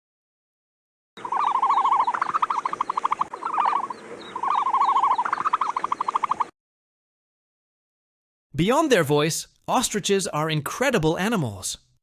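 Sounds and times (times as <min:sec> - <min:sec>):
animal calling in trills: 0:01.2 - 0:06.5.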